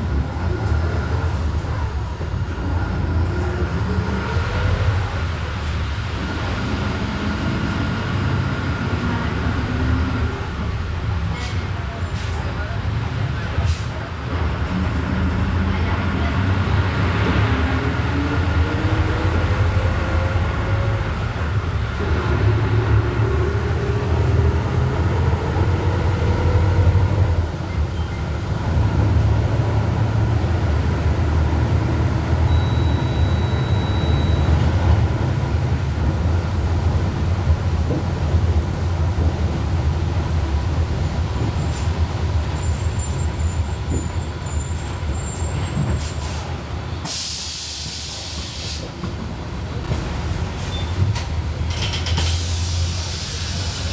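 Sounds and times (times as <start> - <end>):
bus engine drone: 0.0 - 53.9
air brake hiss: 46.0 - 48.9, 52.2 - 53.9.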